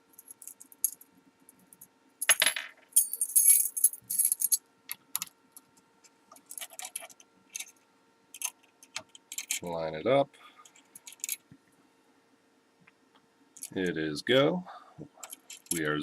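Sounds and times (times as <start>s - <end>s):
metal keys clinking: 2.2s - 4.6s.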